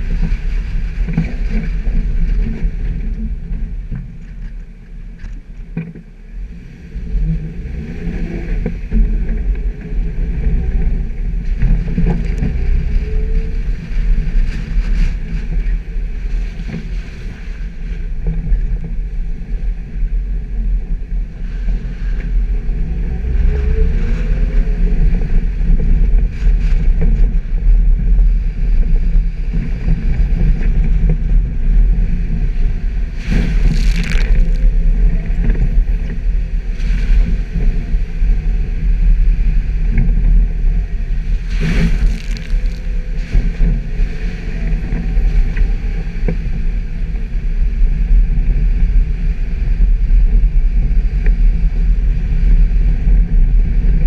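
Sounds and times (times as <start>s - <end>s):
vehicle driving off-road: 0.0s - 54.0s
short rushes of noise: 33.2s - 35.6s, 41.3s - 44.0s.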